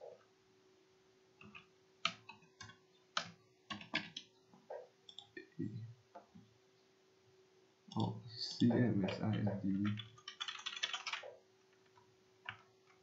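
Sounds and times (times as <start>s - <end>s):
faint hum: 0.0s - 13.0s
keyboard keys clicking: 1.4s - 4.3s, 9.0s - 11.2s.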